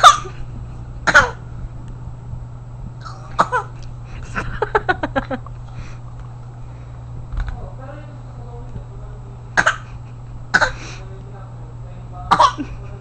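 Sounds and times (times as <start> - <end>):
child coughing: 0.0 - 0.4, 1.0 - 1.4, 3.0 - 3.8, 9.6 - 10.8, 12.3 - 12.8.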